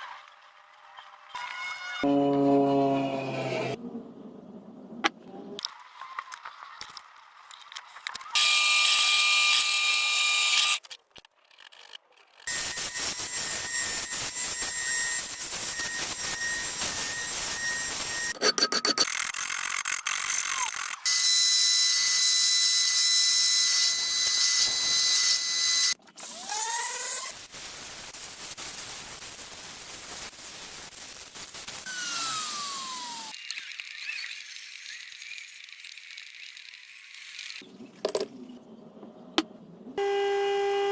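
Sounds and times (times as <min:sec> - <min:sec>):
power tool motor whirring: 0:19.0 - 0:27.3, 0:31.8 - 0:37.6.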